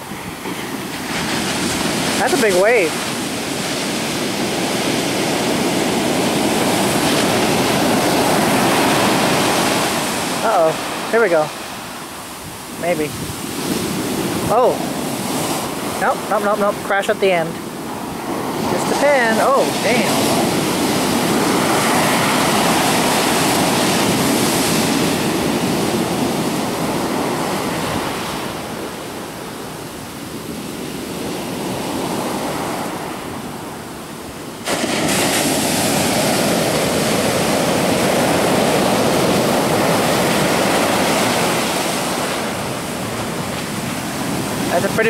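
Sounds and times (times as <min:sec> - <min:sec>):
ocean waves breaking: 0:00.0 - 0:45.0.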